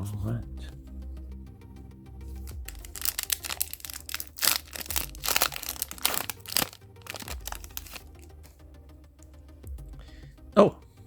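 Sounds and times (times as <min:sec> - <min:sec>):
foil wrapper crinkling and tearing: 0:02.4 - 0:08.5.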